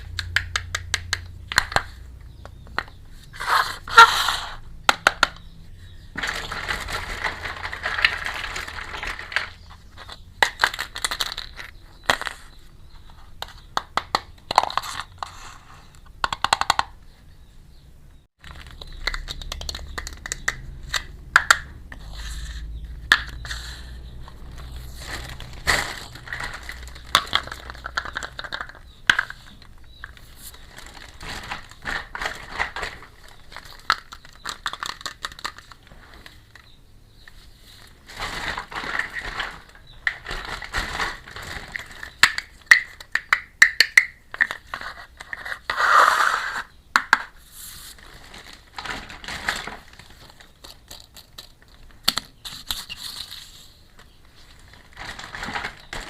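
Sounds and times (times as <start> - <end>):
plastic packaging crinkling: 6.0 - 12.5, 18.4 - 36.7, 37.7 - 43.3, 47.4 - 56.0
plastic toy pieces clicking: 16.2 - 17.0, 50.6 - 52.8.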